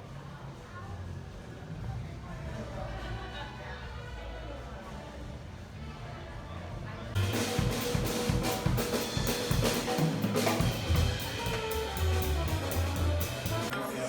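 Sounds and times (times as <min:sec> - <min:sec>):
music with drum kit and bass: 0:07.2 - 0:13.7.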